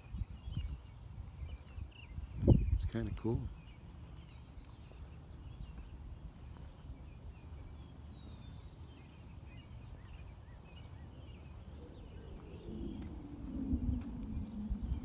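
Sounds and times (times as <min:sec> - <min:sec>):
small birds chirping: 0:00.0 - 0:15.0
steady low rumble: 0:00.0 - 0:15.0.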